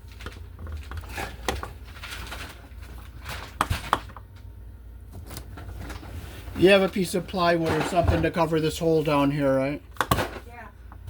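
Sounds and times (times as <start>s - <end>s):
scraping and rustling: 0.0s - 4.0s.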